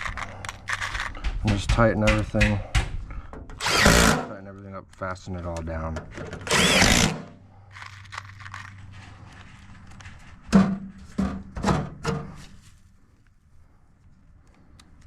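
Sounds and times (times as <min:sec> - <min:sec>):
sharp knocks on metal: 0:01.2 - 0:03.0
drill driving a screw: 0:03.6 - 0:04.3, 0:06.5 - 0:07.3.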